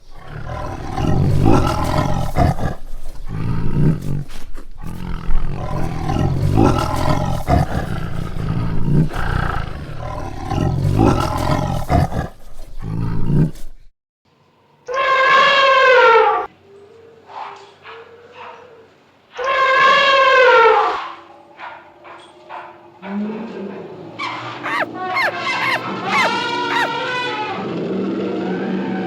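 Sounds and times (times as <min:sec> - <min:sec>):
lion roaring and growling: 0:24.6 - 0:27.0.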